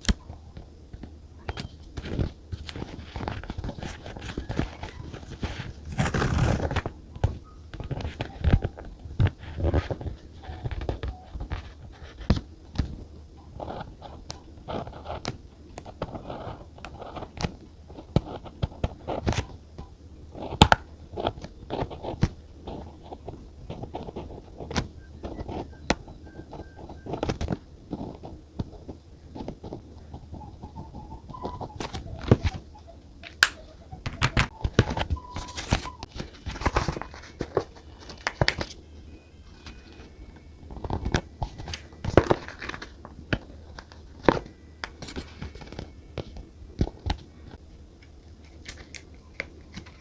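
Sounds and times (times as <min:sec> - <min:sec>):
paper rustling: 0:02.0 - 0:06.9, 0:31.3 - 0:38.9.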